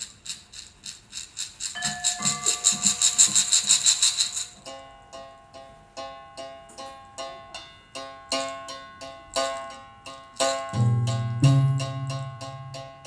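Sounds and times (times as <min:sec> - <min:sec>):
shaker rattling: 0:00.0 - 0:04.7, 0:10.3 - 0:12.5
plucked pitched notes ringing: 0:10.7 - 0:13.0.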